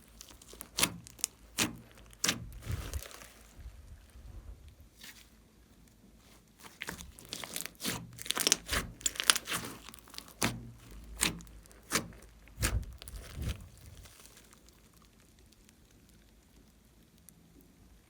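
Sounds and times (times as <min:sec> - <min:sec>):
slime squeezed popping: 0:00.0 - 0:03.5, 0:06.6 - 0:15.3.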